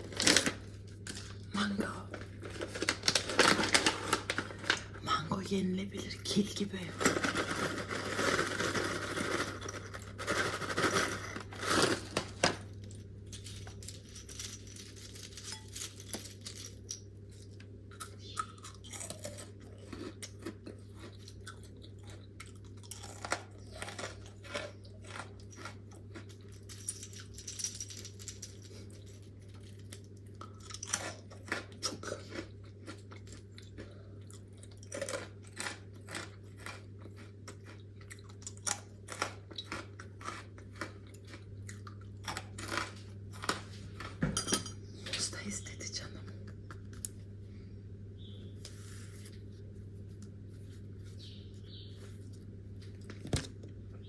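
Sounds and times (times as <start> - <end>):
crunching and chewing: 0.0 - 5.0, 6.9 - 44.2.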